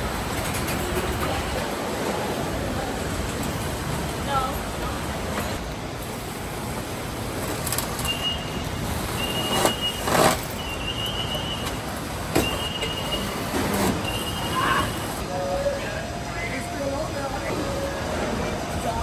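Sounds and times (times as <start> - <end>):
high steady tone: 14.0 - 19.0.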